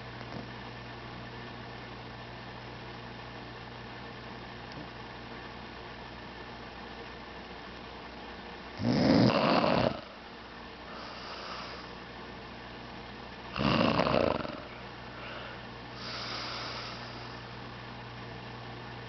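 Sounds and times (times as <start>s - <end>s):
steady low hum: 0.0s - 19.0s
woman snoring: 8.8s - 10.1s, 13.5s - 15.4s
faint breaths: 10.9s - 12.1s, 14.7s - 17.5s.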